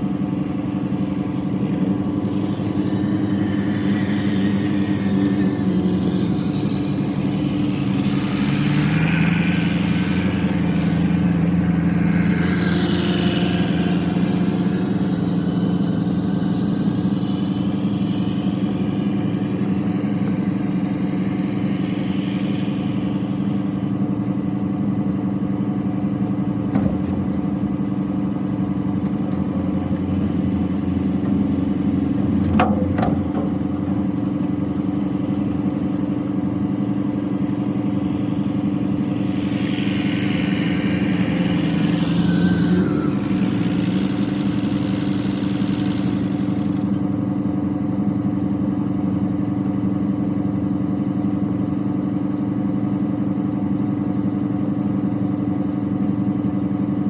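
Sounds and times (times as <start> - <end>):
diesel engine running: 0.0 - 57.0
rush of higher noise: 37.5 - 46.9.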